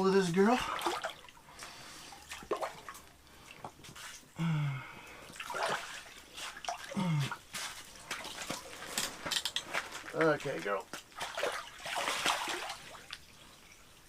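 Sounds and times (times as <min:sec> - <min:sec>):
water splashing in a hole: 0:00.4 - 0:01.5, 0:05.1 - 0:09.0, 0:11.0 - 0:13.3
man grunting: 0:07.0 - 0:07.4.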